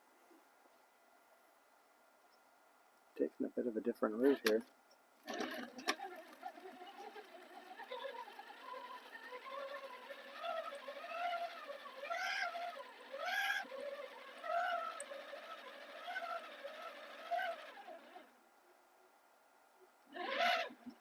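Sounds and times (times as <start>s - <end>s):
rc car electric motor whining: 5.2s - 18.3s, 20.1s - 21.0s.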